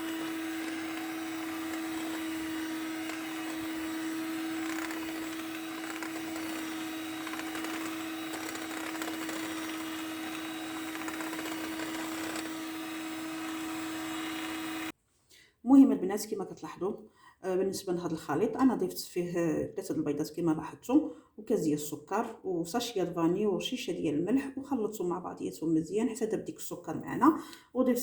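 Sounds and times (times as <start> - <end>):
electric mixer humming: 0.0 - 15.0.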